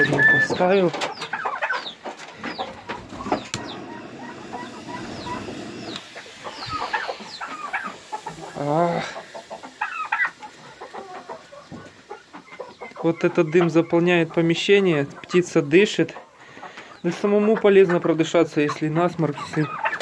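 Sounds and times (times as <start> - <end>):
chicken squawks: 0.0 - 13.7, 19.4 - 20.0
steady hiss: 0.0 - 17.4
chickens clucking: 0.0 - 20.0.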